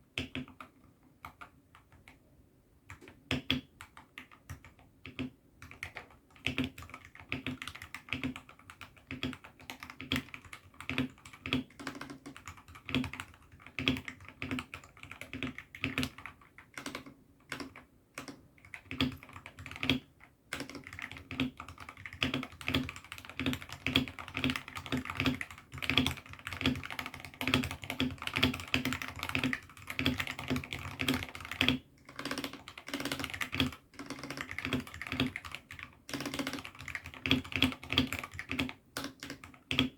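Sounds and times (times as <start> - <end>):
mechanical keyboard typing: 0.2 - 2.2, 2.9 - 39.9.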